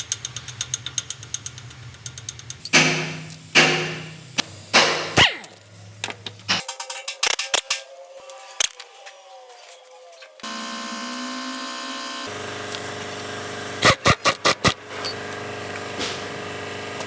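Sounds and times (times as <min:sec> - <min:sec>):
hand tools clicking on metal: 0:00.0 - 0:07.8
machine hum with whine: 0:10.4 - 0:17.0.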